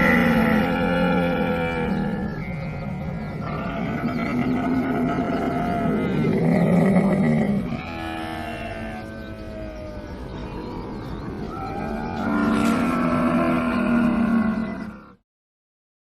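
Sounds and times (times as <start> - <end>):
camel calling: 0.0 - 15.1.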